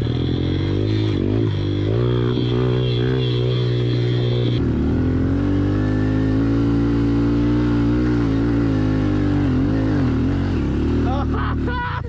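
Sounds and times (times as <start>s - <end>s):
motorbike engine running: 0.0s - 11.9s.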